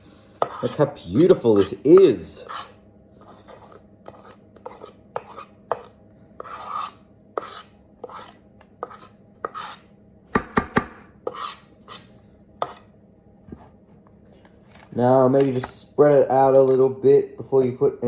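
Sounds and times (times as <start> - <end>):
spoon scraping a bowl: 0.4 - 9.9, 11.2 - 12.9.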